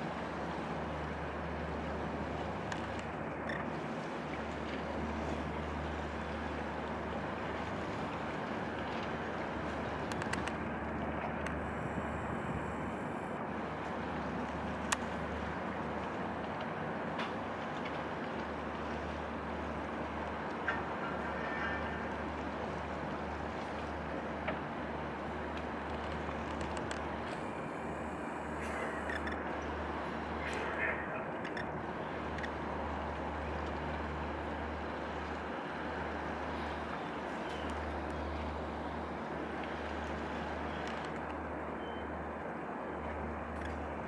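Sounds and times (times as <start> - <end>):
tugboat engine droning: 0.0 - 44.0
wind and water noise: 0.0 - 44.0
faint clicks: 0.2 - 3.7, 4.3 - 21.0, 22.8 - 41.4.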